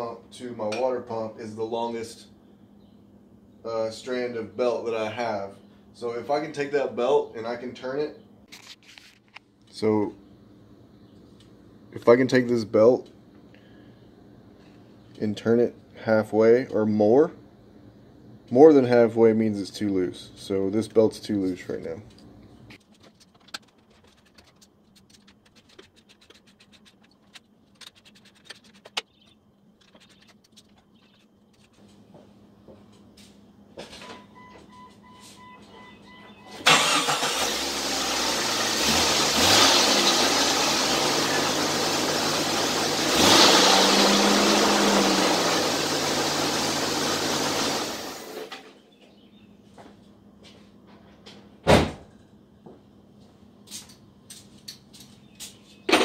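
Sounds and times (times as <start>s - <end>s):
beeps: 34.0s - 36.6s
car engine cranking and running: 36.6s - 48.5s.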